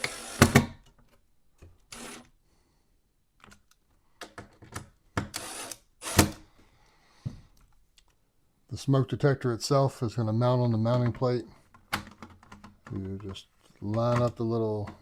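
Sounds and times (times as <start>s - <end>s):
power drill driving screws: 0.0s - 0.7s, 1.9s - 2.3s, 5.3s - 6.4s.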